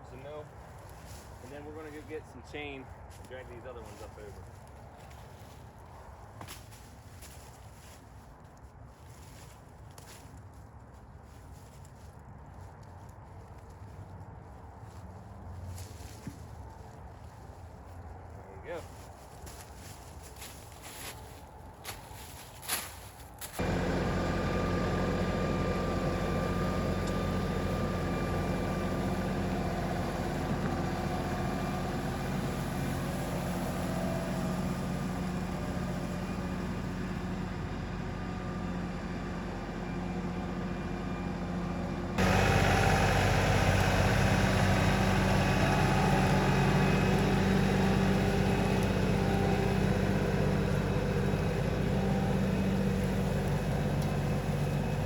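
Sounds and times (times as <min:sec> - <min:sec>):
tractor diesel engine running: 0:18.4 - 0:55.0.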